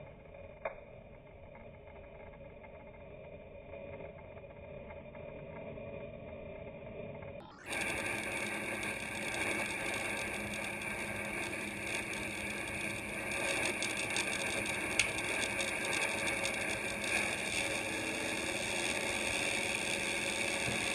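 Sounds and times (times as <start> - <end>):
airboat engine drone: 7.6 - 20.9.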